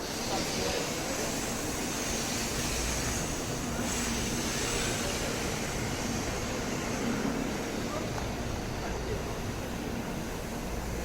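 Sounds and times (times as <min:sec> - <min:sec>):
hiss: 0:00.0 - 0:08.0
station platform noise: 0:00.0 - 0:11.0.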